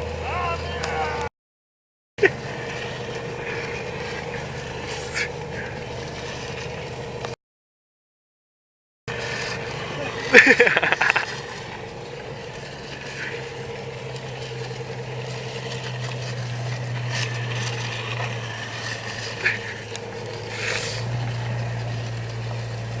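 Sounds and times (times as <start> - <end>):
car engine running: 0.0 - 1.3, 2.2 - 7.4, 9.1 - 23.0
hiss of snow: 16.5 - 22.9.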